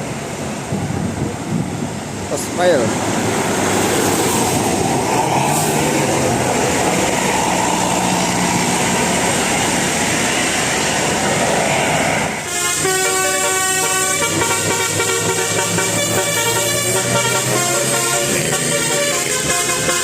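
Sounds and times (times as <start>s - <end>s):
bus horn playing tune: 12.4s - 20.0s.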